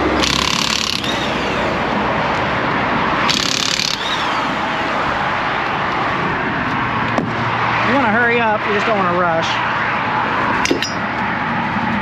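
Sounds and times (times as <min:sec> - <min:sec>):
impact wrench hammering: 0:00.0 - 0:01.6, 0:03.2 - 0:04.4, 0:10.6 - 0:11.0
highway traffic: 0:00.0 - 0:12.0.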